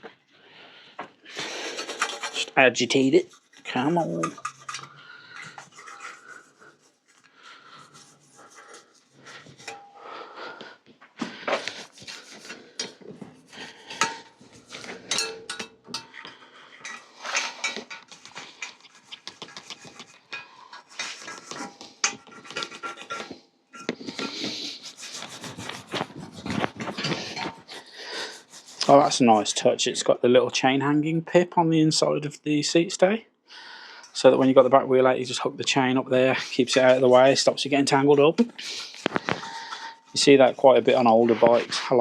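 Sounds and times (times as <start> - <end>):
brush scrubbing metal frame: 1.4 - 9.9, 11.8 - 29.8, 35.3 - 42.0.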